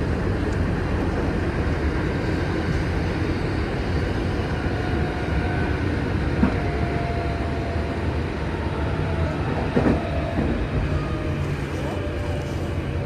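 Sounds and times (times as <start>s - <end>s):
train wheels rumbling: 0.0s - 5.7s.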